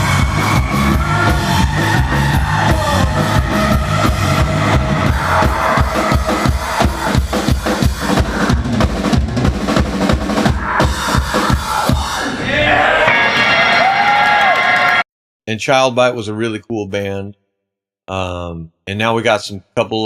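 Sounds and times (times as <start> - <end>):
live rock band playing: 0.0 - 11.8
heavy drum strikes: 0.0 - 12.4.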